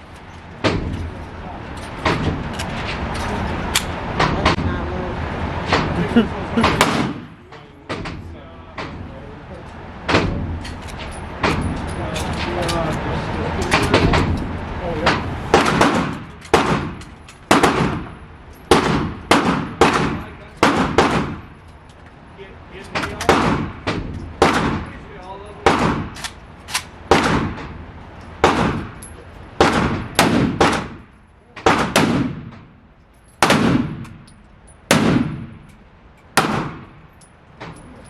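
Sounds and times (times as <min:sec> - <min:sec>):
gunshots: 0:06.6 - 0:07.4, 0:15.1 - 0:18.1, 0:18.7 - 0:21.5, 0:23.1 - 0:24.9, 0:25.6 - 0:26.2, 0:27.0 - 0:27.8, 0:28.4 - 0:29.0, 0:29.6 - 0:32.7, 0:33.4 - 0:34.2, 0:34.9 - 0:35.6, 0:36.4 - 0:37.0.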